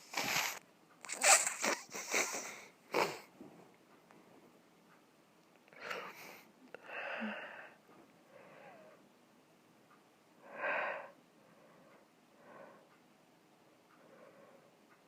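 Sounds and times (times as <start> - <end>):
person's wheezy breaths: 0.0 - 3.3, 5.7 - 9.0, 10.4 - 13.0, 13.9 - 14.9.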